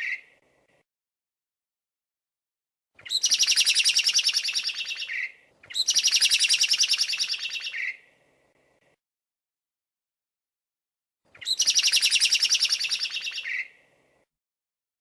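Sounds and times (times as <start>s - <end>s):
songbird trilling: 3.0s - 8.0s, 11.4s - 13.8s.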